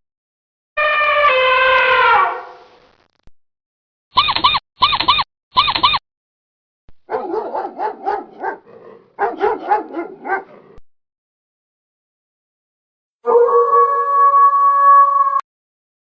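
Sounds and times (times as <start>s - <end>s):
dog barking rapidly: 7.1s - 10.8s.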